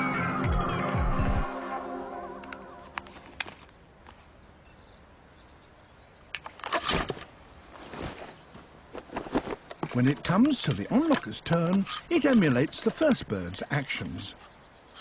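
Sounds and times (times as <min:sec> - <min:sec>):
scuffling and knocking: 0:06.8 - 0:12.5.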